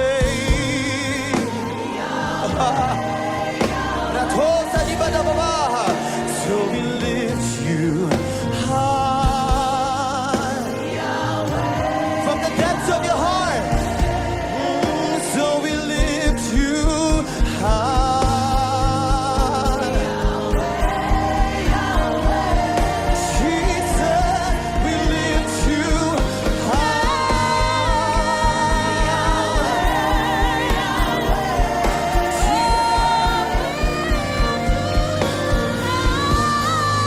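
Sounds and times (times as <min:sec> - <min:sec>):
wordless singing with vibrato: 0:00.0 - 0:37.0
drum beat: 0:13.7 - 0:36.7.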